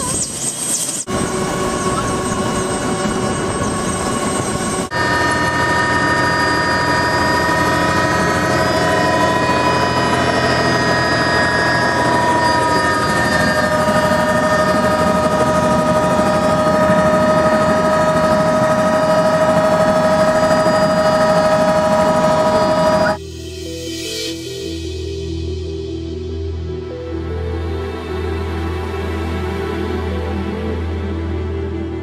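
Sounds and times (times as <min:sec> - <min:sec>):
helicopter engine and rotors: 0:00.0 - 0:23.2.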